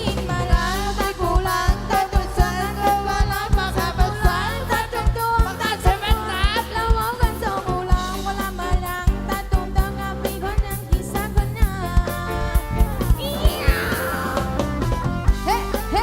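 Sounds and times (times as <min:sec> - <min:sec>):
heavy bass: 0:11.5 - 0:16.0
person singing: 0:13.2 - 0:15.6.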